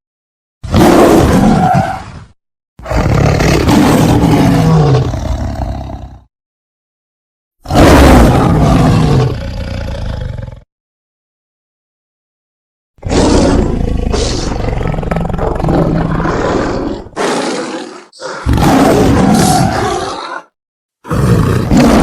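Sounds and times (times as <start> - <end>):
big cat roaring: 0.6 - 2.0, 2.8 - 6.3, 7.6 - 10.7, 13.0 - 22.0
big cat growl: 2.8 - 6.3, 7.6 - 10.7, 13.0 - 22.0.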